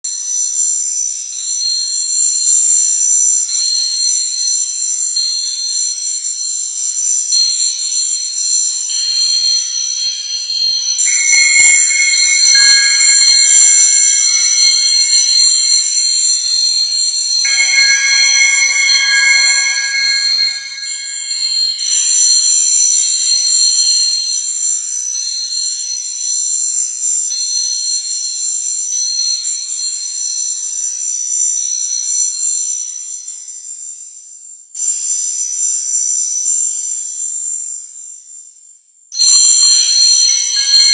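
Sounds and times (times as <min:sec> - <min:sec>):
shrill electronic alarm-like tones: 0:11.0 - 0:16.0, 0:17.5 - 0:22.0
lower electronic tones: 0:17.5 - 0:22.0.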